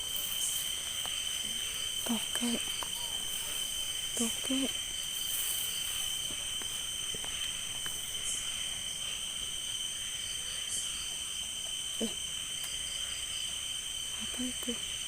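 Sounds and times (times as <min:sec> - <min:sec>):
crickets trilling: 0:00.0 - 0:15.0.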